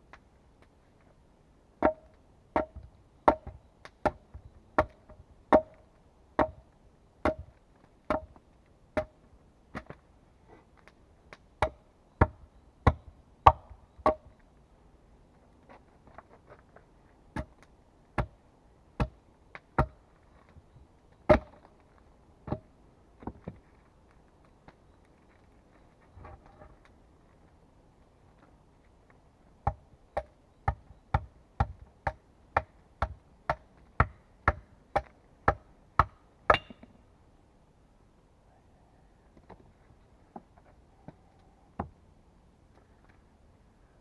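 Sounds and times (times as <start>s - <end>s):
axe chopping wood: 1.8s - 5.8s, 6.4s - 7.5s, 8.1s - 8.4s, 9.0s - 10.0s, 11.6s - 14.3s, 17.3s - 17.6s, 18.2s - 18.4s, 19.0s - 19.2s, 19.8s - 20.0s, 21.3s - 21.6s, 22.4s - 23.4s, 29.6s - 36.9s.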